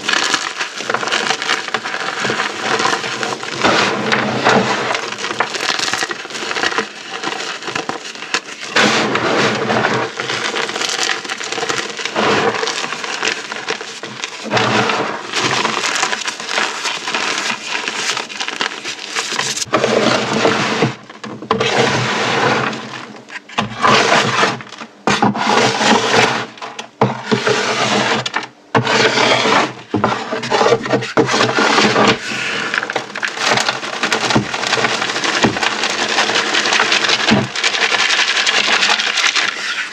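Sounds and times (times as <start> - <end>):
brittle material crunching: 0.0 - 21.2, 30.7 - 39.9.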